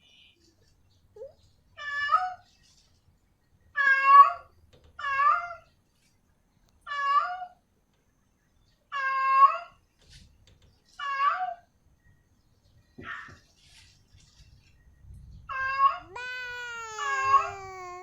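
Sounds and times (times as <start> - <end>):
cat meowing: 15.6 - 18.0.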